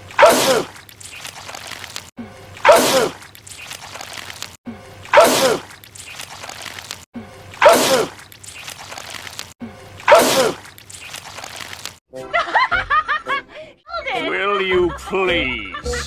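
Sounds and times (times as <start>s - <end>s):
man sneezing loudly: 0.2s - 0.7s, 2.6s - 3.2s, 5.1s - 5.7s, 7.6s - 8.2s, 10.1s - 10.6s.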